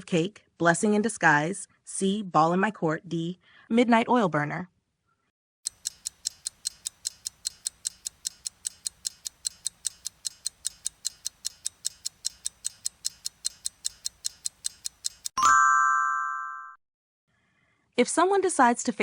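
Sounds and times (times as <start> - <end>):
clock ticking: 5.7 - 15.4.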